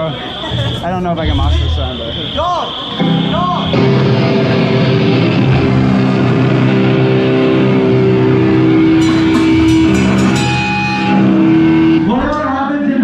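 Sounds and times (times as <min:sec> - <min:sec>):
electric guitar chords: 0:00.0 - 0:12.6
sharp hits: 0:00.4 - 0:12.3
rock band playing live: 0:02.7 - 0:12.2.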